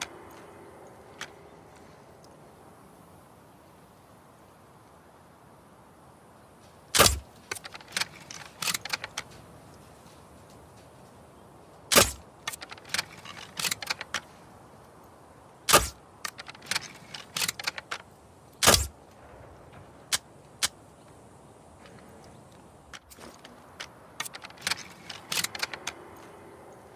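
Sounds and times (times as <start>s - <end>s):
mechanical clicks and rattles: 0.0s - 2.4s, 7.0s - 10.6s, 11.9s - 14.4s, 15.7s - 20.8s, 21.8s - 26.9s
crossbow shots snapping: 7.0s - 9.2s, 11.9s - 14.2s, 15.7s - 18.0s, 18.6s - 19.0s.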